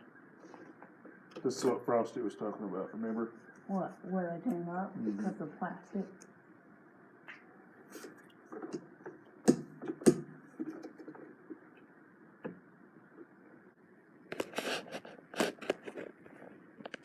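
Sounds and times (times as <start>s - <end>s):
faint clicks and handling noises: 7.3s - 13.7s, 14.3s - 17.0s.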